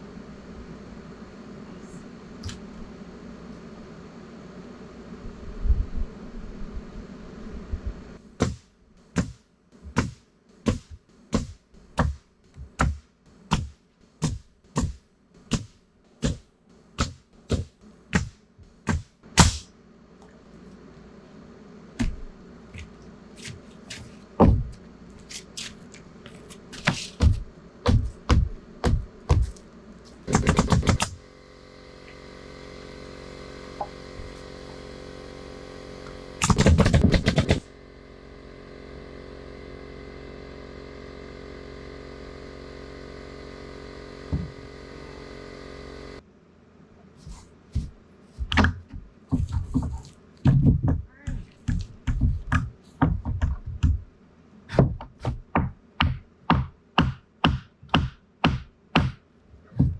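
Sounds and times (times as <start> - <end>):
steady machine hum: 0.0 - 59.9
sharp knocks and thuds: 8.4 - 19.7, 22.0 - 24.8, 26.7 - 29.6, 47.7 - 54.1, 54.7 - 59.9
loud machine bursts: 30.3 - 46.2.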